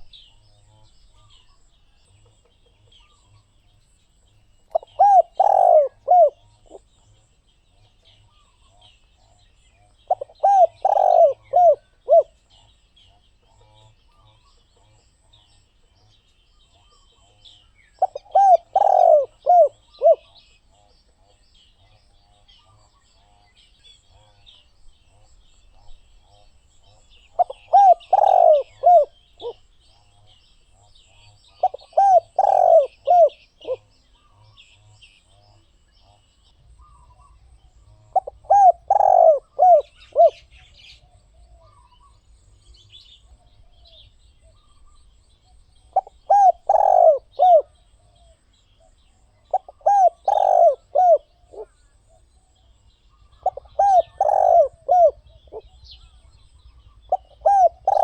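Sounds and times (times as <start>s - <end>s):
small birds chirping: 0.0s - 58.0s
dove cooing: 4.7s - 6.8s, 10.1s - 12.4s, 18.0s - 20.4s, 27.3s - 29.6s, 31.5s - 33.9s, 36.8s - 42.2s, 45.9s - 48.4s, 49.4s - 51.9s, 53.3s - 58.0s.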